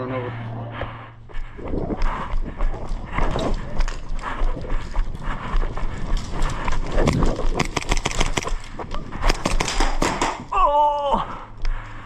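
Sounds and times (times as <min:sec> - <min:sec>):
airsoft clicks and knocks: 0:07.0 - 0:10.5.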